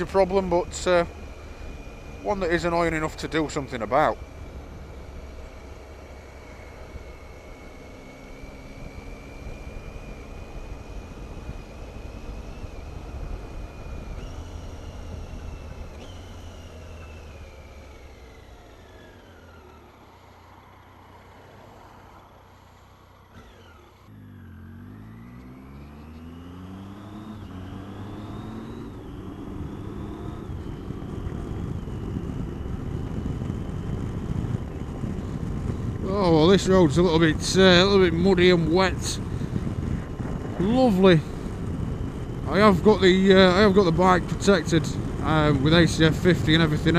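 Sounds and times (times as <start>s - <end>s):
motorcycle engine shifting gears: 0.0s - 46.9s.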